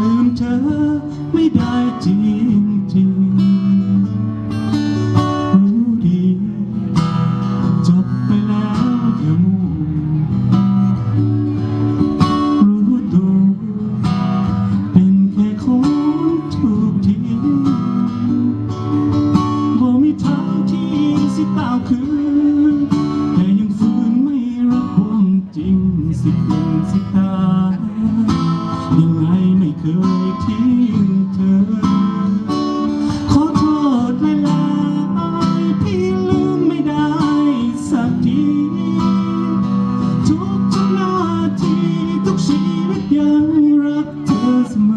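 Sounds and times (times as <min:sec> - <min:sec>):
acoustic guitar: 0:00.0 - 0:44.9
person singing: 0:19.5 - 0:44.9.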